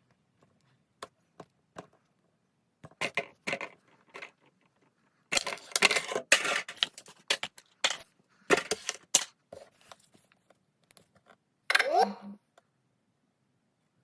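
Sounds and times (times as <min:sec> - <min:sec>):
packaging crackling and rustling: 0:05.3 - 0:10.5.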